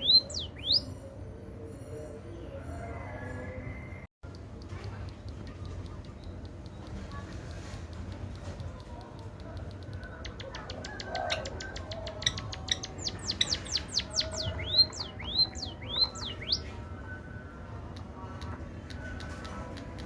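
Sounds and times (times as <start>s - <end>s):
bird singing: 0.0s - 2.6s, 10.2s - 17.6s.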